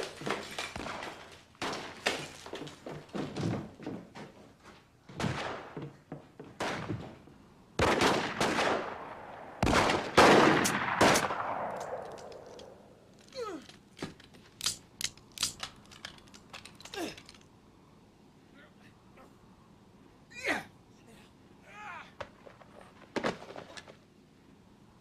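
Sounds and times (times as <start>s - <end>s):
gunshots in quick succession: 7.8s - 12.1s.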